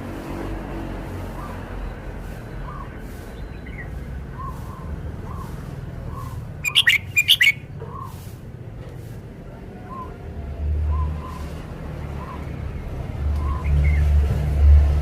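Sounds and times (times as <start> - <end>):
soft short bird calls: 2.6 - 8.2
bird singing short notes: 6.6 - 7.6.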